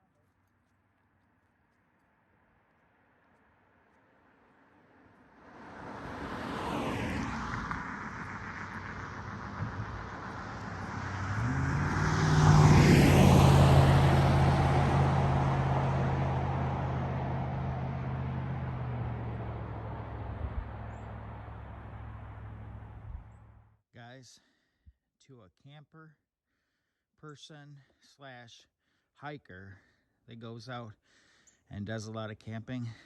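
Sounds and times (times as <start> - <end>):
vehicles passing by: 4.7 - 23.7.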